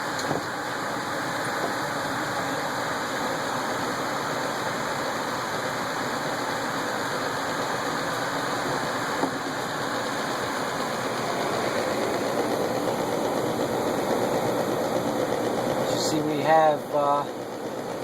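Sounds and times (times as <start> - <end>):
gas furnace burners rushing: 7.6 - 17.7.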